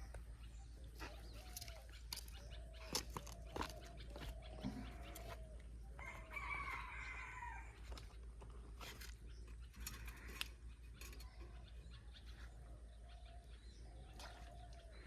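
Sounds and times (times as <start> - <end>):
rooster crowing: 6.0 - 7.8.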